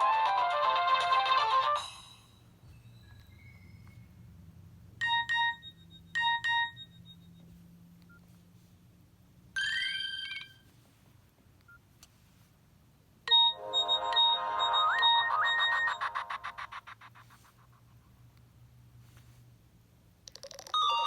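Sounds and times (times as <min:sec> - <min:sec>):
polyphonic ringtone melody: 0:00.0 - 0:02.3, 0:05.0 - 0:07.0, 0:13.3 - 0:17.0, 0:20.8 - 0:21.0
rising chirp: 0:02.6 - 0:04.2, 0:13.3 - 0:17.0
phone alert beeps: 0:09.6 - 0:10.6, 0:13.3 - 0:16.6.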